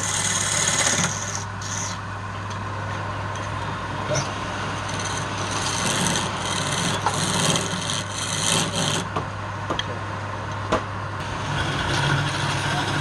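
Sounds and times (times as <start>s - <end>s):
tool scraping spinning wood: 0.0s - 2.0s, 4.1s - 9.2s, 11.2s - 13.0s
lathe motor humming: 4.4s - 9.1s, 11.2s - 13.0s.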